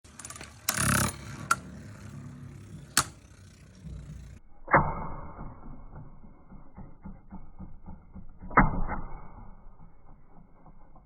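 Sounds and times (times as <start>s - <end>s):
spinning tops whirring: 0.0s - 4.4s
spinning tops clacking together: 0.1s - 4.4s.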